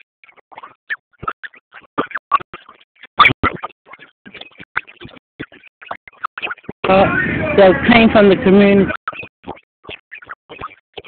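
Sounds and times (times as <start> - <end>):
indistinct voices: 6.8 - 9.0.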